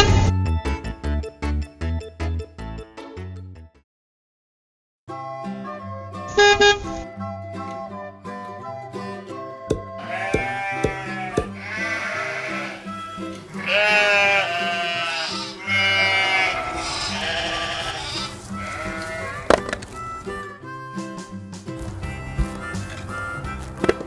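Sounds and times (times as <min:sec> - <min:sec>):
cheerful background music: 0:00.0 - 0:03.8, 0:05.1 - 0:24.0
sheep bleating: 0:10.0 - 0:19.7.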